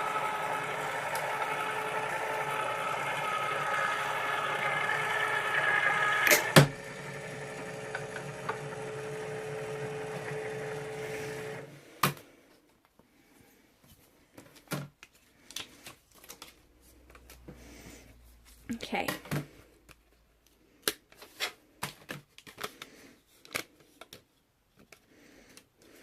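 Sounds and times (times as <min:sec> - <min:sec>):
die-cutting machine motor: 0:00.0 - 0:11.8.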